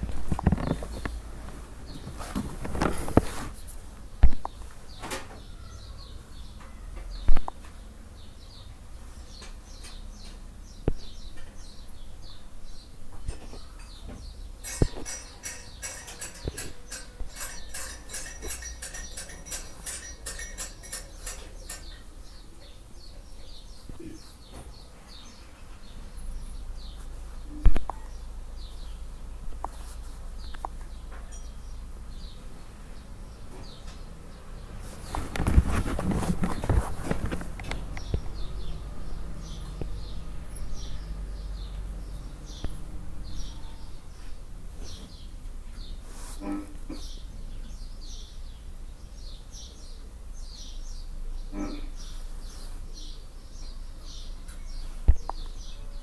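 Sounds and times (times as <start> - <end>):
sharp clicks and knocks: 0.0 - 3.3, 13.2 - 22.1, 35.1 - 38.6
small birds chirping: 0.0 - 56.0.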